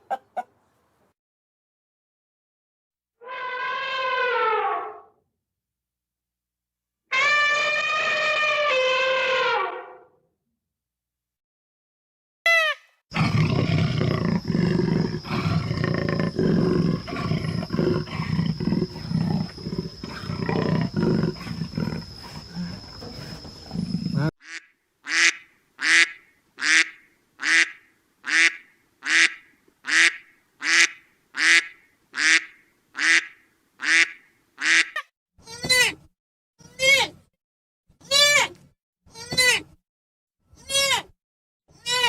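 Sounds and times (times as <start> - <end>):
repeated pitched animal calls: 7.1 - 10.0, 12.5 - 35.0
animal grunting and growling: 13.1 - 24.3.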